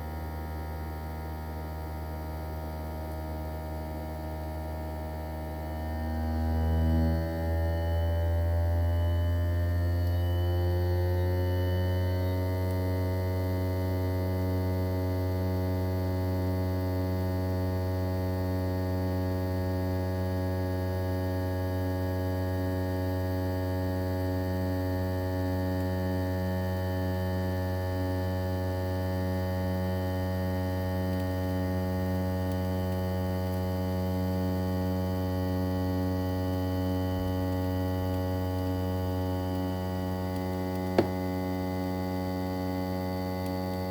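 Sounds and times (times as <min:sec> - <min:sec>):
air conditioner compressor humming: 0:27.4 - 0:43.9.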